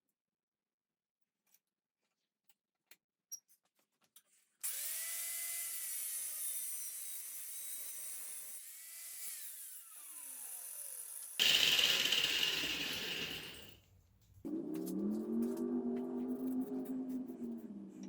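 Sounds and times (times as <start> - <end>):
high-speed power tool cutting steel: 4.6 - 13.8.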